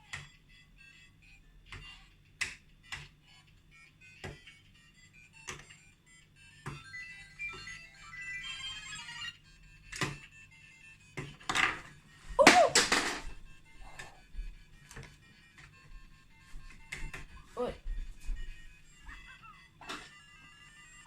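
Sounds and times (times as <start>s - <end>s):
electronic game sound effects: 6.5s - 9.4s.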